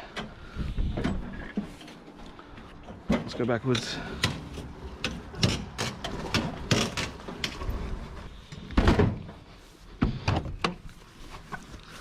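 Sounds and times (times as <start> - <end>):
heavy items knocking and clunking: 0.0 - 10.8.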